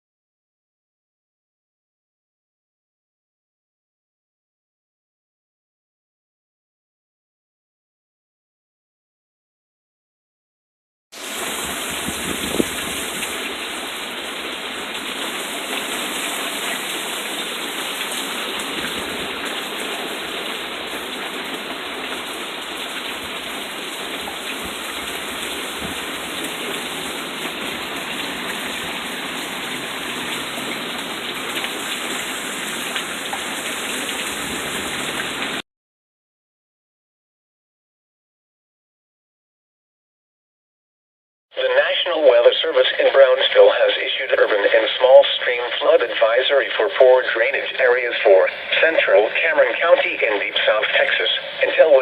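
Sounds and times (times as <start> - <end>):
heavy rain falling: 11.2 - 35.6, 43.0 - 52.0.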